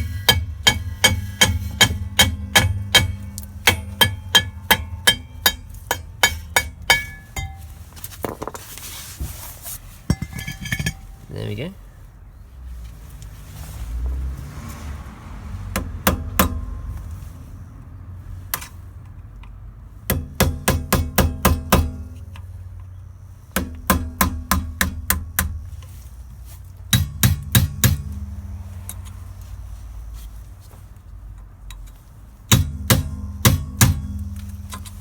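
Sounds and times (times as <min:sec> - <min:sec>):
hammer blows on metal: 0:00.0 - 0:07.9, 0:23.5 - 0:25.7, 0:26.9 - 0:29.1, 0:32.5 - 0:35.0.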